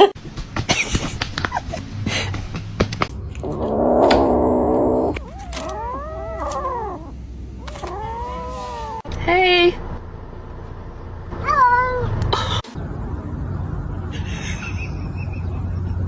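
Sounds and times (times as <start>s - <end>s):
cat yowling: 3.4s - 9.1s.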